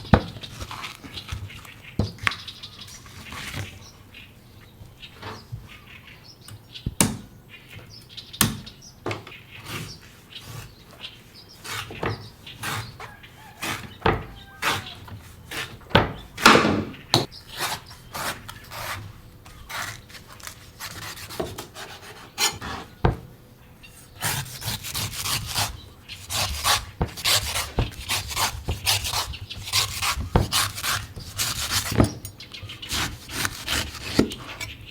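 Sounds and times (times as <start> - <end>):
knife scraping coconut: 9.5 - 10.8, 11.5 - 15.9, 17.5 - 23.0, 23.9 - 34.9
knife chopping coconut: 11.6 - 19.1, 19.7 - 23.2, 24.2 - 32.3, 32.9 - 34.8.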